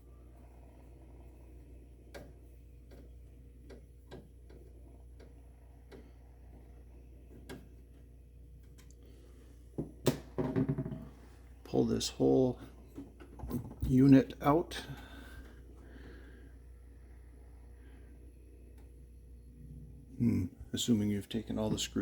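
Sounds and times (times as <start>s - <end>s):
low steady hum: 0.0s - 22.0s
knocks: 9.8s - 11.1s.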